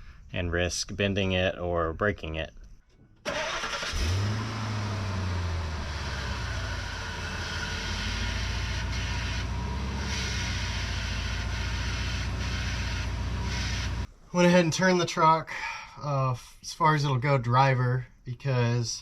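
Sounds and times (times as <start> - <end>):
pickup truck engine idling: 3.3 - 14.1.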